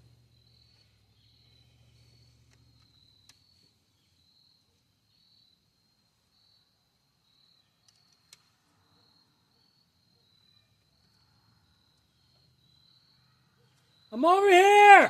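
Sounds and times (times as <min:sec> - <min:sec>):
crickets chirping: 0:00.0 - 0:15.0
faint clicks: 0:02.4 - 0:03.5, 0:07.8 - 0:08.6.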